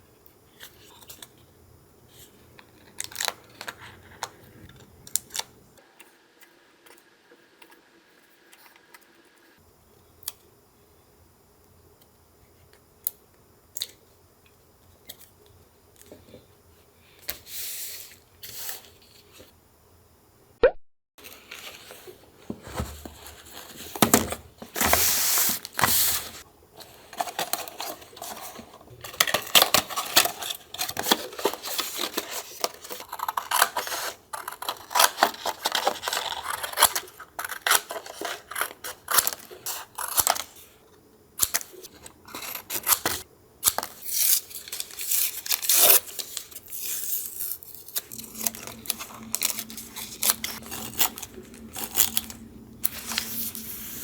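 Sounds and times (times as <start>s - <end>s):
paper tearing and rustling: 27.1s - 40.5s, 44.1s - 54.0s.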